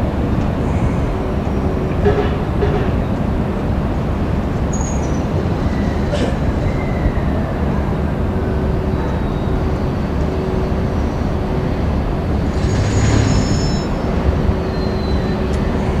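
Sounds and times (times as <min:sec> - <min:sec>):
freight train rumbling: 0:00.0 - 0:16.0
faint high squeal: 0:12.5 - 0:15.5.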